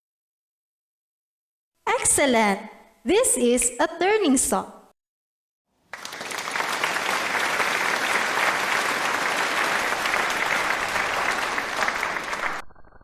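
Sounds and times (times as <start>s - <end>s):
crowd applause: 5.8s - 12.7s.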